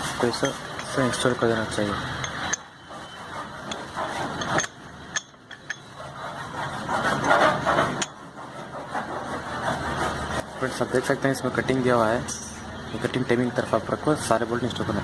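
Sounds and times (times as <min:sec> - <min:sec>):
steady background noise: 0:00.0 - 0:15.0
metallic tool clicks and clinks: 0:04.4 - 0:05.9, 0:12.3 - 0:12.6.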